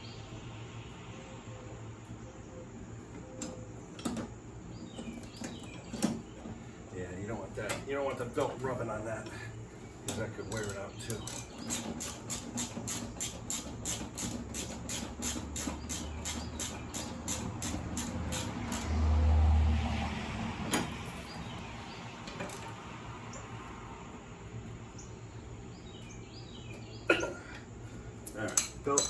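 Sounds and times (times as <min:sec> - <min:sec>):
ratchet wrench clicking: 0:10.5 - 0:19.1.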